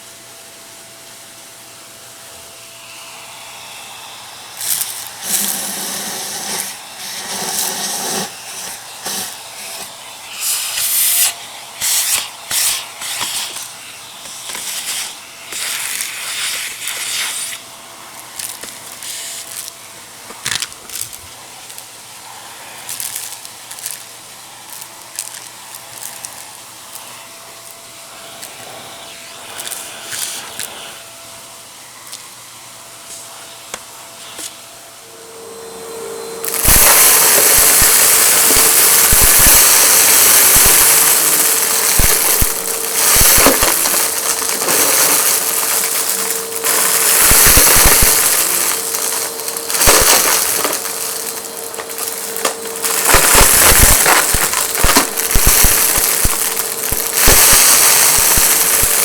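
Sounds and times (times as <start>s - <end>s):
vacuum cleaner motor whine: 0.0s - 59.0s
debris rattling through vacuum: 4.6s - 10.1s, 22.8s - 30.6s, 36.4s - 59.0s.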